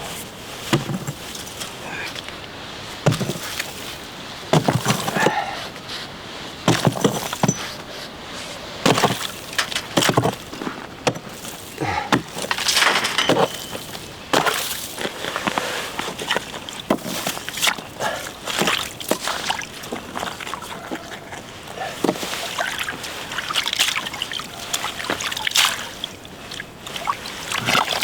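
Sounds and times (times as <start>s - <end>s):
ice cracking and crunching: 8.9s - 17.8s.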